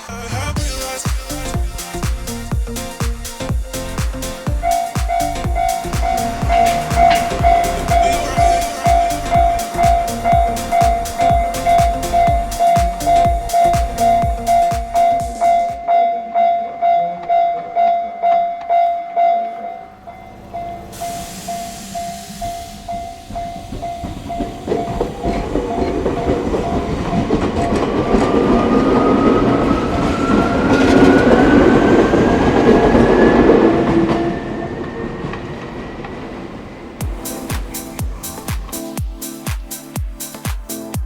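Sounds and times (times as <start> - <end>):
music: 0.0 - 16.5, 37.0 - 41.0
level crossing warning bell: 4.6 - 20.9
train motor whine: 18.6 - 37.0
train wheels clattering on track: 20.3 - 37.8.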